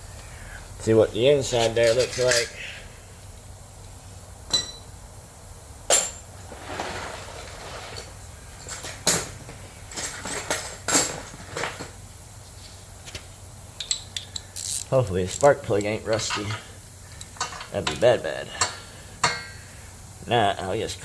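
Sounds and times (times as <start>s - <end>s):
metal tools clinking: 1.5s - 2.7s, 13.8s - 19.5s
scraping rub: 6.5s - 8.1s.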